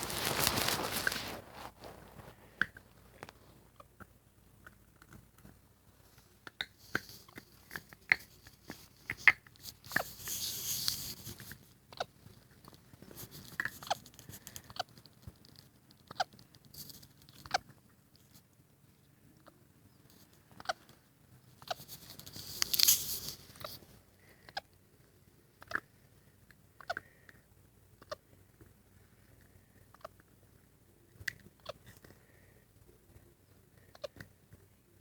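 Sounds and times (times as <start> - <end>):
rustling crinkling: 0.0 - 3.7, 5.0 - 17.6, 21.6 - 24.4.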